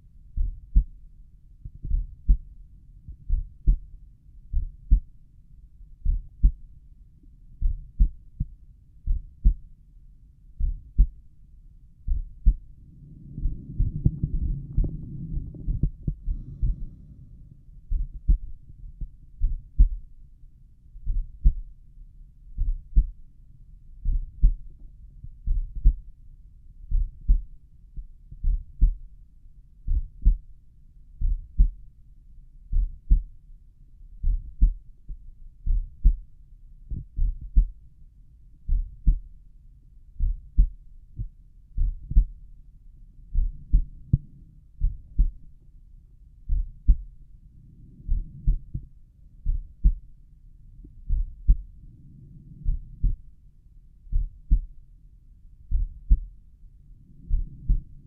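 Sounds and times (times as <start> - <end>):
heartbeat through stethoscope: 0.3 - 1.0, 1.6 - 5.2, 6.0 - 6.7, 7.6 - 9.8, 10.6 - 11.3, 12.0 - 20.2, 21.0 - 21.7, 22.5 - 23.2, 24.0 - 26.1, 26.9 - 29.1, 29.8 - 30.6, 31.2 - 31.9, 32.7 - 33.4, 34.1 - 37.8, 38.6 - 39.3, 40.1 - 42.4, 43.3 - 45.6, 46.4 - 50.2, 50.8 - 53.4, 54.1 - 54.8, 55.6 - 56.4, 57.0 - 58.0.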